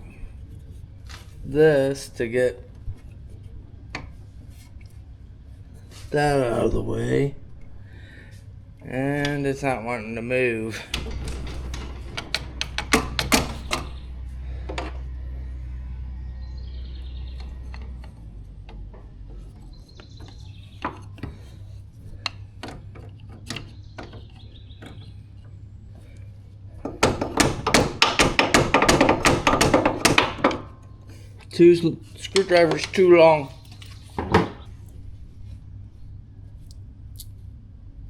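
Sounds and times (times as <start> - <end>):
rapid metallic clatter: 10.7 - 15.0, 26.8 - 31.1
metal tools knocking and scraping: 10.7 - 15.1, 26.8 - 34.7.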